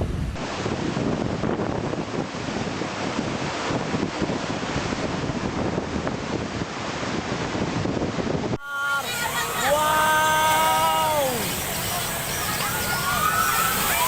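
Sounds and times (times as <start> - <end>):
heavy surf breaking: 0.0 - 14.0
wind buffeting microphone: 0.0 - 14.0.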